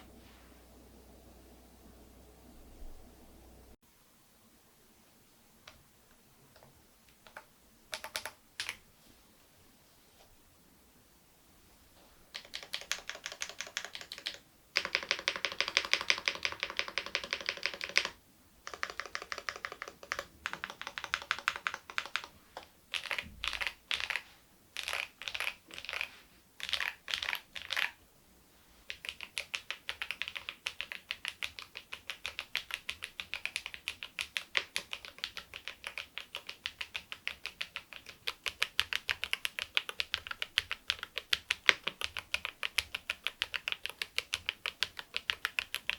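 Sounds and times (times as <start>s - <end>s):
keyboard typing: 6.5s - 8.8s, 12.3s - 28.0s, 28.9s - 45.9s.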